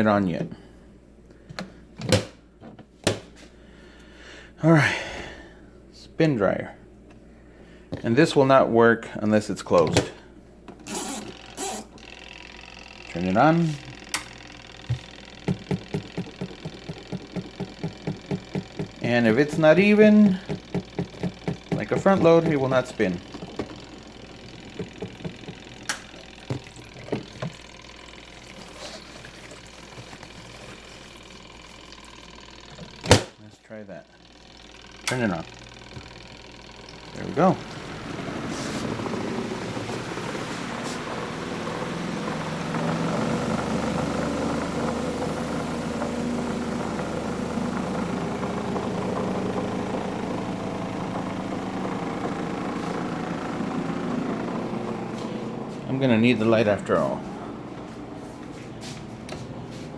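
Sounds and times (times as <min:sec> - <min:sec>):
washing machine humming: 0:09.2 - 0:59.9
sharp knocks and clicks: 0:14.0 - 0:19.6, 0:20.4 - 0:27.6.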